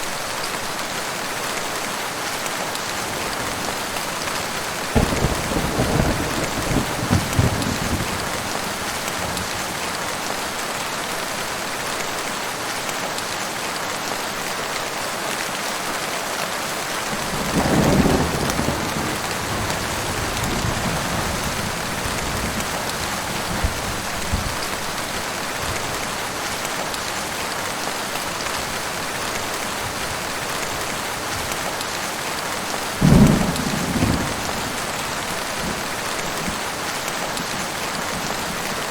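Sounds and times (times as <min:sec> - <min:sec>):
heavy rain falling: 0:00.0 - 0:38.9
thunder rolling: 0:03.4 - 0:09.8, 0:17.2 - 0:24.7, 0:33.0 - 0:36.6.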